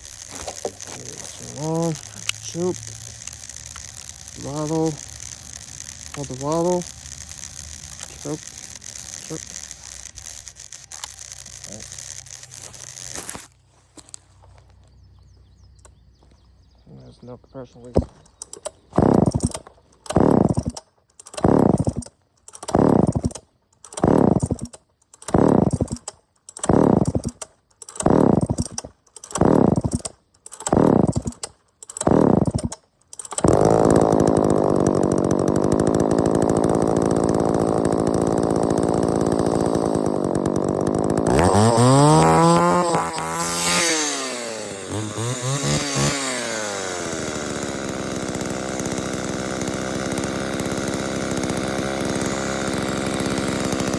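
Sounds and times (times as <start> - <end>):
chainsaw running and revving: 0.0 - 13.5, 18.9 - 53.9
recoil starter pulls whirring: 0.0 - 14.2, 17.9 - 53.9.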